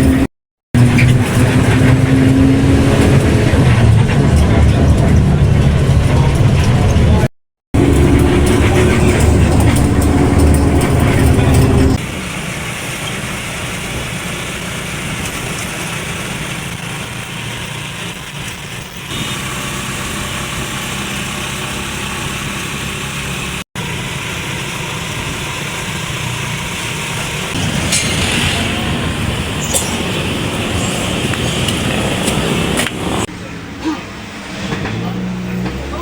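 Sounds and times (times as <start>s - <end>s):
steady engine-like hum: 0.0s - 36.0s.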